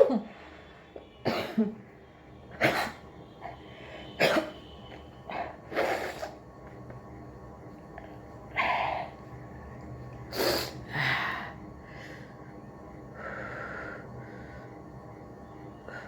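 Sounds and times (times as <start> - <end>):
person sniffing and snorting: 5.7 - 6.4.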